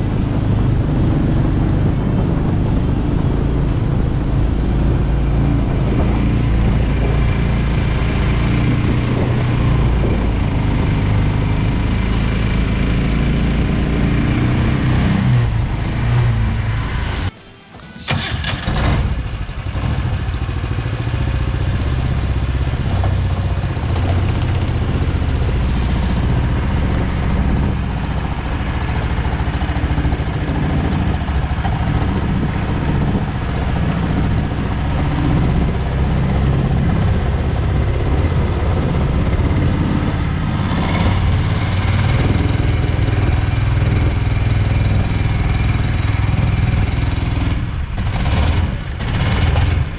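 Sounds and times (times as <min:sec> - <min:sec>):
single-cylinder boat motor running: 0:18.1 - 0:47.5.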